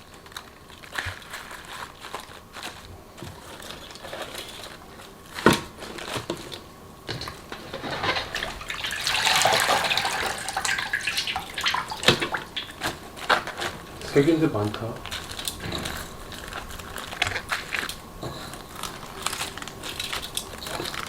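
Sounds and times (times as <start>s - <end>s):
brine pouring and splashing: 7.5s - 18.0s.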